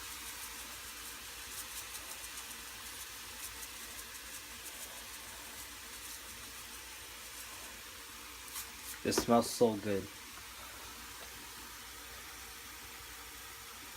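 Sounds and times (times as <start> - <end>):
meat and onions sizzling in a pan: 0.0 - 13.9.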